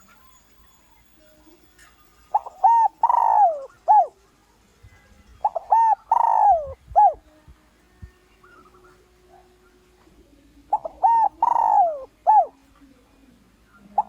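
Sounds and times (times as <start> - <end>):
dove cooing: 2.3 - 4.2, 5.4 - 7.3, 8.4 - 14.0.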